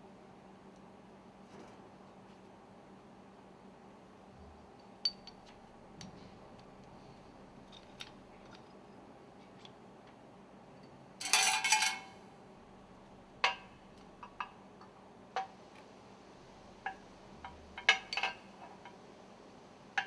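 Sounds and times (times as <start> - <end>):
metal rings clinking: 11.2 - 12.2, 17.8 - 18.5.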